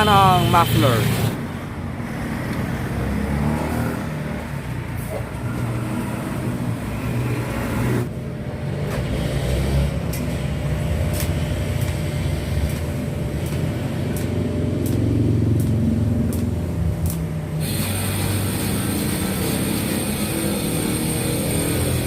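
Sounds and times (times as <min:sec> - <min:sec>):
engine running with low rumble: 0:08.0 - 0:21.3.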